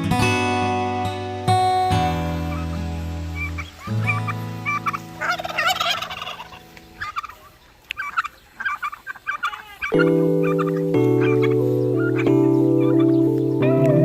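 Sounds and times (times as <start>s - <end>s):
guitar music: 0.0s - 7.1s, 9.9s - 14.0s
poultry calling: 2.1s - 14.0s
rapid warbling bird call: 2.4s - 13.6s.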